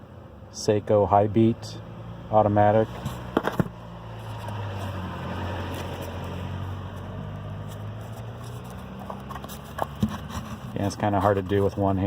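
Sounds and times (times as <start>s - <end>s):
car engine humming: 0.0s - 12.0s.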